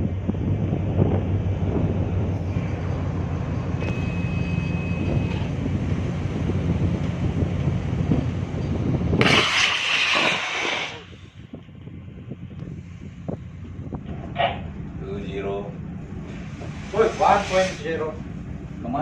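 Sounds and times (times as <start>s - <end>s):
wind noise on microphone: 0.0s - 2.8s, 3.8s - 14.8s
ship engine drone: 0.0s - 19.0s.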